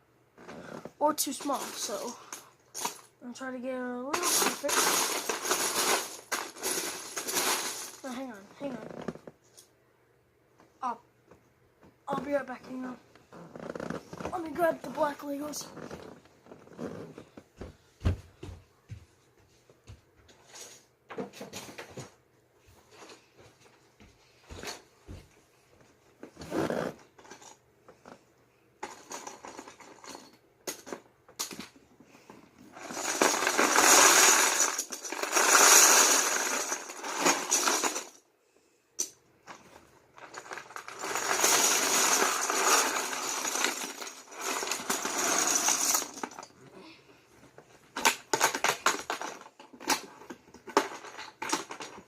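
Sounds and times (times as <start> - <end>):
plastic bricks clattering: 0.5 - 3.1, 4.2 - 8.3, 32.8 - 38.2, 40.2 - 46.5, 48.0 - 52.0.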